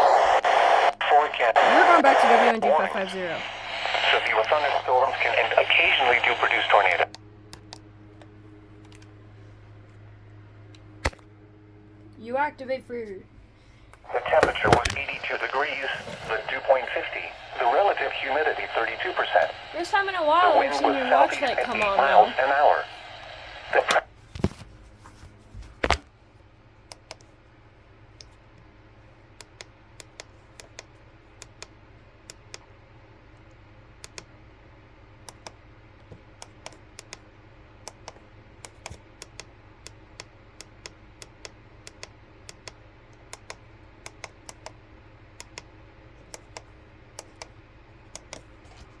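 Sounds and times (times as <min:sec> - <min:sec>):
faint irregular clicks: 0:29.4 - 0:32.7, 0:35.2 - 0:44.8, 0:45.4 - 0:48.8.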